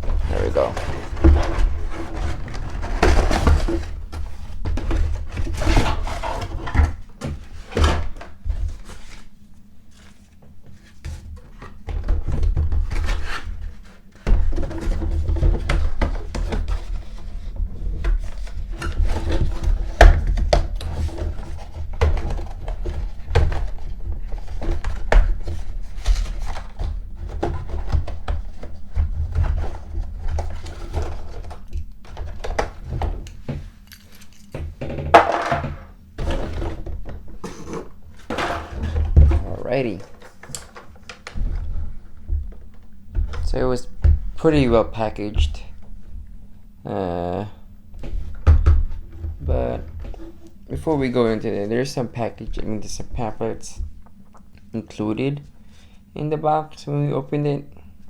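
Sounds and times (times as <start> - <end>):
cardboard packaging scraping and rustling: 0.0 - 34.4, 36.2 - 46.1.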